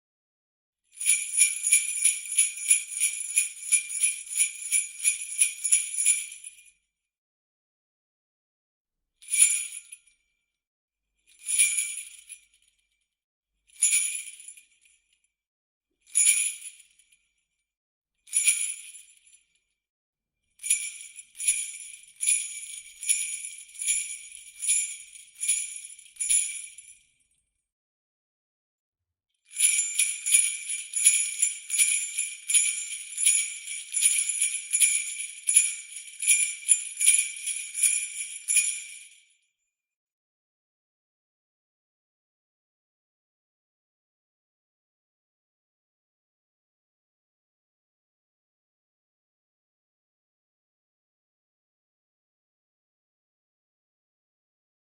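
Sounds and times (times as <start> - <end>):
jingle bells shaken: 1.0 - 6.5, 20.6 - 27.0, 29.5 - 39.2.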